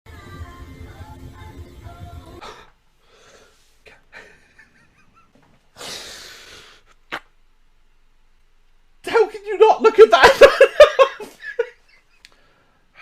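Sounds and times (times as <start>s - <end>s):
music: 0.1s - 2.4s
breathy hissing: 5.7s - 7.0s.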